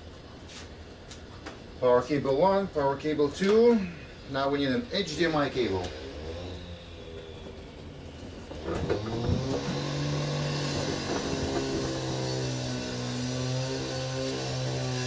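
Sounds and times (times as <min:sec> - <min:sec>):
motor hum: 0:03.8 - 0:15.0.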